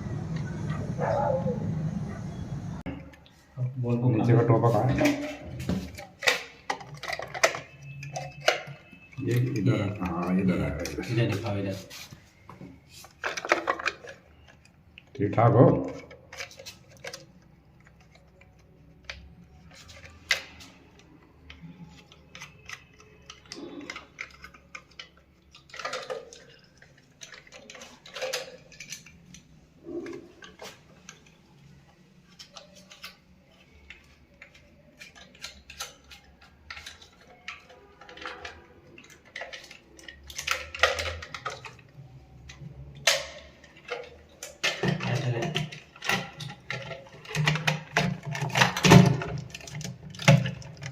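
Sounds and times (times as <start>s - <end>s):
plastic parts clicking and clattering: 4.2s - 11.7s, 13.0s - 50.9s.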